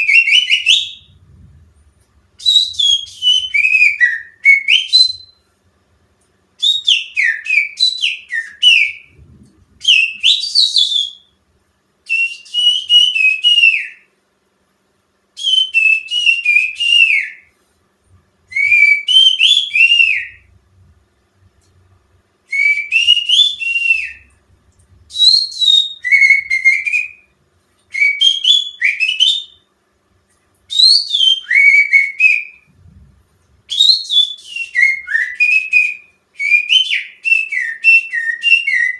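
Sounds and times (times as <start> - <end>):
finger whistling birdsong: 0.0 - 1.2, 2.4 - 5.4, 6.6 - 9.2, 9.8 - 11.4, 12.1 - 14.1, 15.4 - 17.5, 18.5 - 20.5, 22.5 - 24.4, 25.1 - 27.3, 27.9 - 29.7, 30.7 - 32.7, 33.7 - 38.9.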